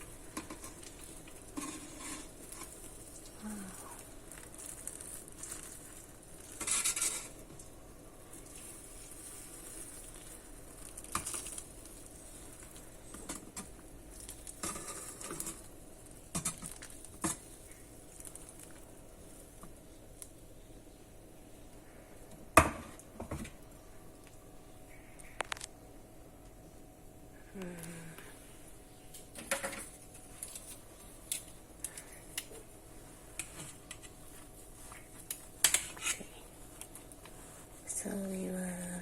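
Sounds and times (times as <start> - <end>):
boiling water pouring: 0.0 - 20.4.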